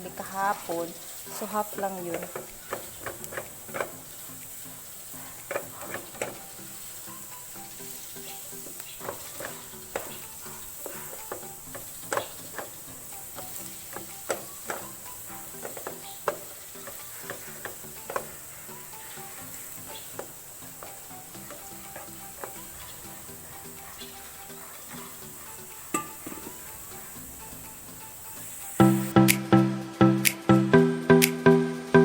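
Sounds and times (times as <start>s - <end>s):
rice sizzling in a pan: 0.0s - 29.1s
utensil scraping and knocking pan: 1.7s - 7.2s, 7.8s - 26.7s.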